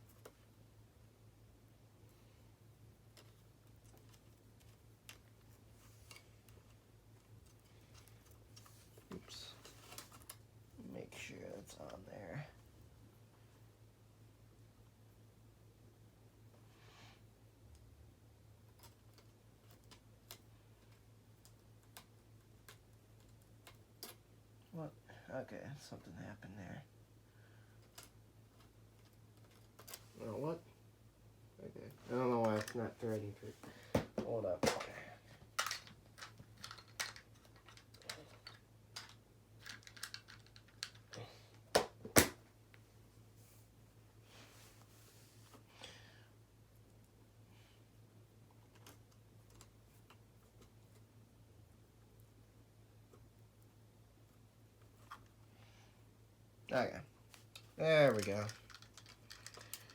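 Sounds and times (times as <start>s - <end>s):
faint sharp clicks of small parts: 3.1s - 10.5s, 18.6s - 24.3s, 27.6s - 30.1s, 34.6s - 42.8s, 48.4s - 51.1s, 57.2s - 59.9s.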